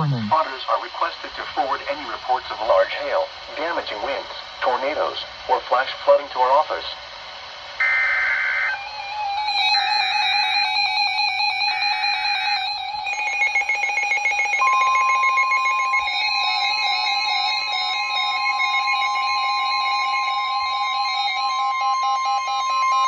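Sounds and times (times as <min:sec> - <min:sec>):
steady warning alarm tone: 0:07.8 - 0:23.0
alert radios rapid beeping: 0:13.1 - 0:19.3.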